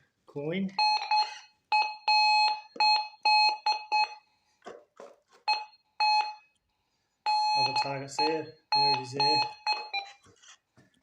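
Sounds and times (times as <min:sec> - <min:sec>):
metal detector beeps: 0:00.8 - 0:04.2, 0:05.5 - 0:06.5, 0:07.3 - 0:10.2.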